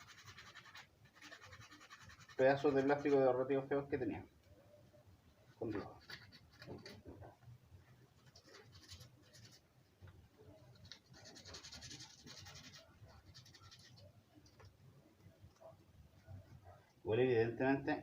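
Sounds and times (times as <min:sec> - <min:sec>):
sandpaper scratching on metal: 0:00.0 - 0:03.2.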